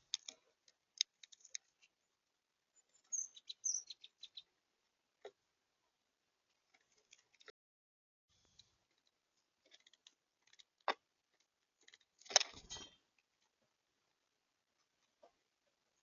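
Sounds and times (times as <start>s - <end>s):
birds pecking and scratching: 0.0s - 2.2s, 8.4s - 15.8s.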